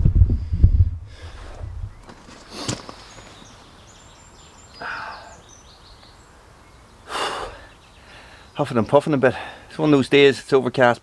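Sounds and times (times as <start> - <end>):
man breathing hard: 1.0 - 1.7, 4.8 - 5.4, 7.1 - 8.6, 9.3 - 9.8
faint bird chirps: 1.6 - 9.0.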